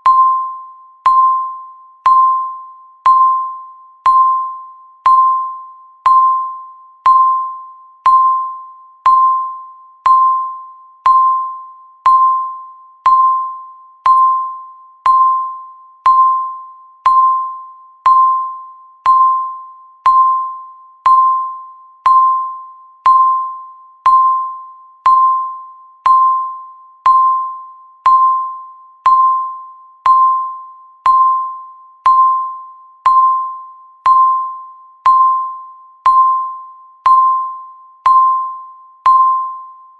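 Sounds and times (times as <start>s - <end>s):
countdown timer beeping: 0.0s - 39.8s.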